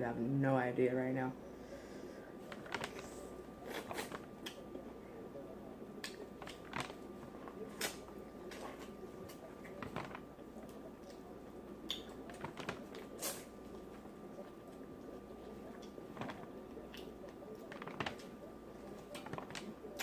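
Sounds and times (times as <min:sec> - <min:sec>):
wet smacking and chewing: 0:06.0 - 0:18.0.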